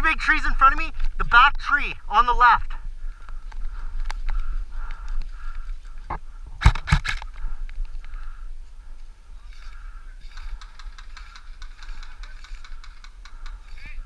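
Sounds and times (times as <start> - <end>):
airsoft gun shots: 6.6 - 7.2.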